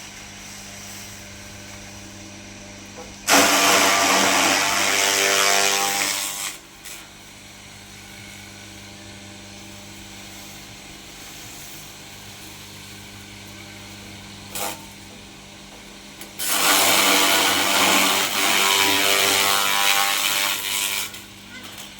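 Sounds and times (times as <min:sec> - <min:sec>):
harsh cutting noise: 0:03.2 - 0:07.0, 0:16.4 - 0:21.9.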